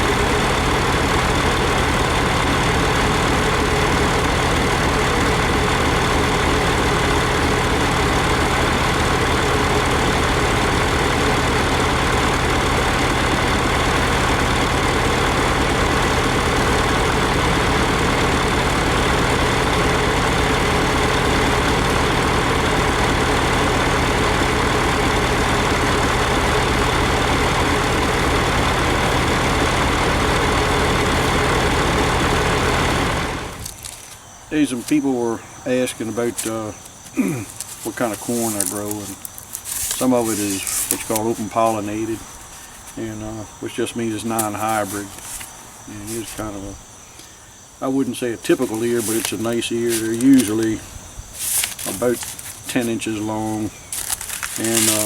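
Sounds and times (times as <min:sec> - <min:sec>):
silage machinery running: 0:00.0 - 0:55.0
tractor engine humming: 0:00.0 - 0:55.0.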